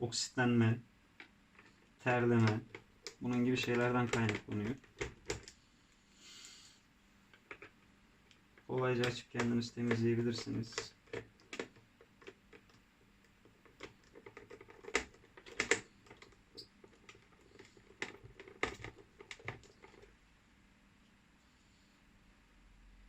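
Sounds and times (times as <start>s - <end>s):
hard plastic parts clicking: 1.2s - 5.6s, 7.3s - 20.1s.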